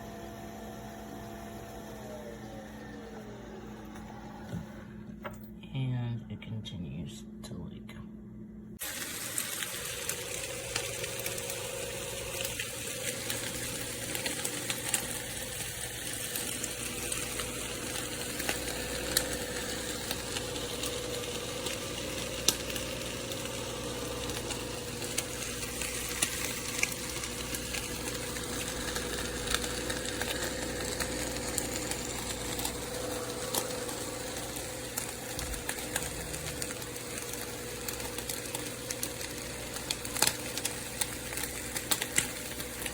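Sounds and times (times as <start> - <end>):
coffee machine motor and pump hum: 0.0 - 5.7, 8.8 - 42.9.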